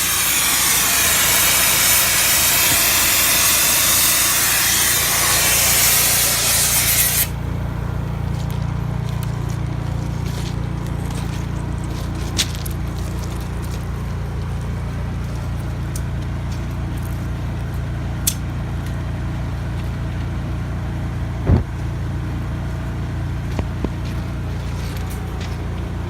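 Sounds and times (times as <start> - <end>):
engine idling rumble: 0.0 - 26.0
thump: 21.4 - 21.7.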